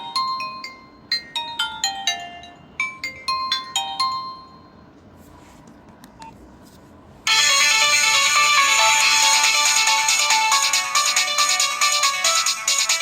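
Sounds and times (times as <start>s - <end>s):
chiming phone ringtone: 7.3s - 13.0s
dense loud phone ringtone: 7.3s - 13.0s.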